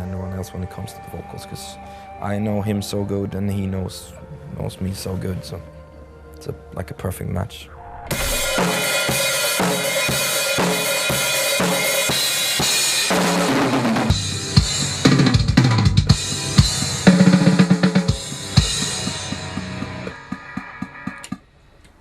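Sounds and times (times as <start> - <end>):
low drum hit runs: 7.8 - 9.9
rock drum kit playing: 8.1 - 21.4.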